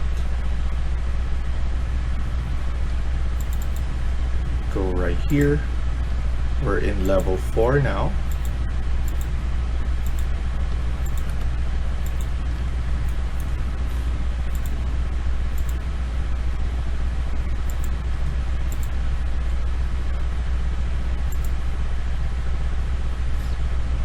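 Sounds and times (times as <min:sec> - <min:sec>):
steady low hum: 0:00.0 - 0:24.0
faint clicks: 0:03.4 - 0:03.9, 0:08.3 - 0:09.3, 0:11.0 - 0:12.3, 0:14.5 - 0:14.8, 0:15.5 - 0:15.8, 0:18.7 - 0:19.0.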